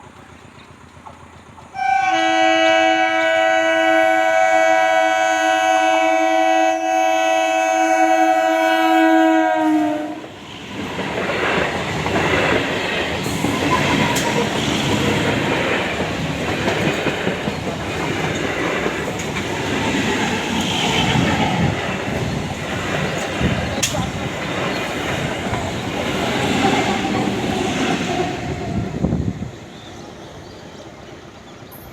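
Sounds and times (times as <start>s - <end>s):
train rumbling past: 0.0s - 31.9s
train horn: 1.8s - 10.3s.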